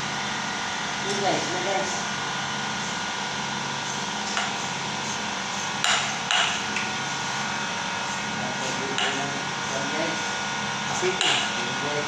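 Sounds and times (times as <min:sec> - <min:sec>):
hammer striking metal: 0:11.2 - 0:11.5.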